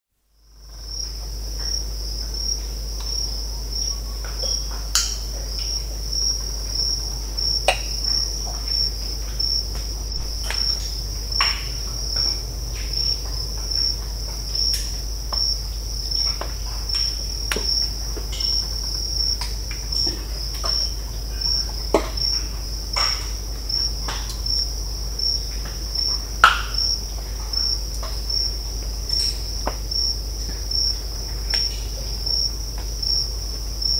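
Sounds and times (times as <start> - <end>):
crickets trilling: 0.4 - 33.9
crackles and pops from trees: 9.6 - 23.4.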